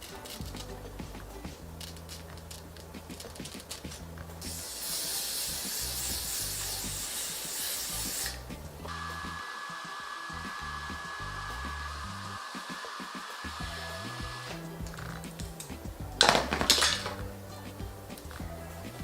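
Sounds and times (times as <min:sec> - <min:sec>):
background music with bass: 0:00.0 - 0:09.5, 0:10.3 - 0:12.5, 0:13.4 - 0:19.0
hair dryer blowing: 0:04.4 - 0:15.2.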